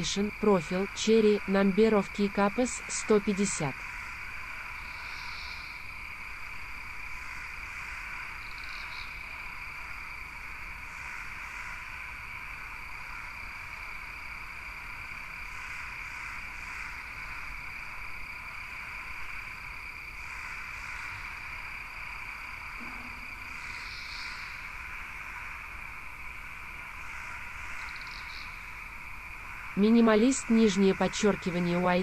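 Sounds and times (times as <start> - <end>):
faint chirps: 4.7 - 6.0, 8.4 - 9.4, 22.7 - 25.6, 27.4 - 32.0
chorus of calling animals: 15.2 - 32.0.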